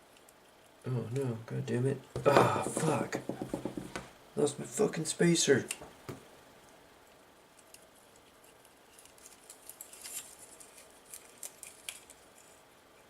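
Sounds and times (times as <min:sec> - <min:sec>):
small parts and hand tools clicking: 0:07.6 - 0:13.0.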